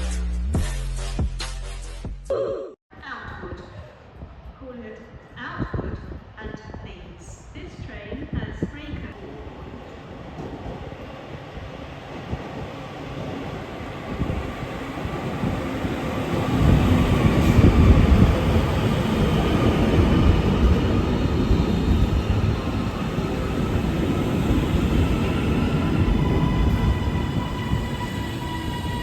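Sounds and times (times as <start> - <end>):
train rumbling past: 9.2 - 29.0.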